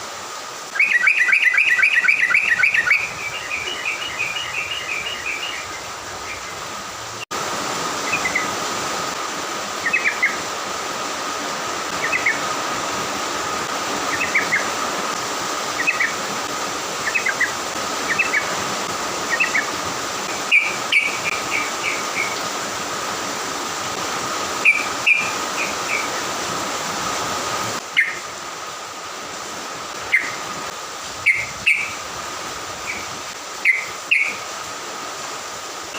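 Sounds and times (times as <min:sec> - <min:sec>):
background hiss: 0:00.0 - 0:35.9
bird singing bubbly chirps: 0:00.7 - 0:06.6, 0:09.8 - 0:10.4, 0:12.0 - 0:12.4, 0:14.1 - 0:14.7, 0:15.8 - 0:16.2, 0:17.0 - 0:18.5, 0:19.3 - 0:19.7, 0:20.4 - 0:22.4, 0:24.6 - 0:26.2, 0:27.9 - 0:28.2, 0:30.0 - 0:30.4, 0:31.2 - 0:32.0, 0:32.8 - 0:34.4.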